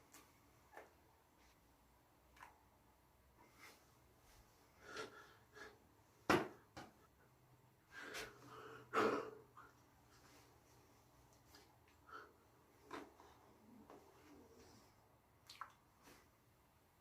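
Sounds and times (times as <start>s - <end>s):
person breathing: 4.6s - 5.9s, 7.9s - 9.7s, 12.0s - 12.5s
person coughing: 8.9s - 9.4s.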